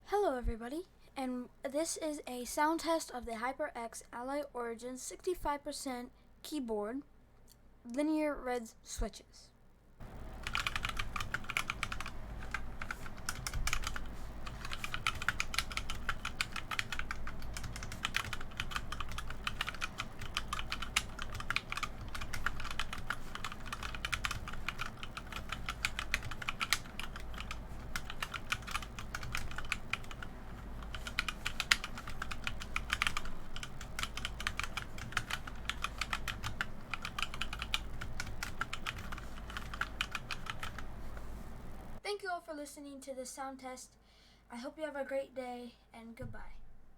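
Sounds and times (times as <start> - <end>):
mechanical keyboard typing: 10.1 - 41.2.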